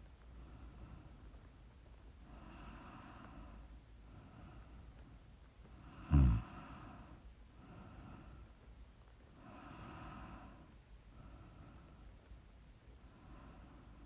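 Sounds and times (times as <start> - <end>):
loud snort: 6.1 - 6.6.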